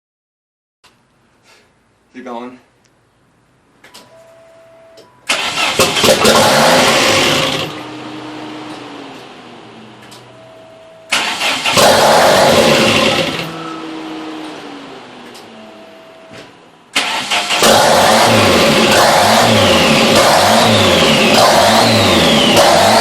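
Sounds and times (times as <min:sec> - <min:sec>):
car engine starting and running: 0:05.2 - 0:23.0.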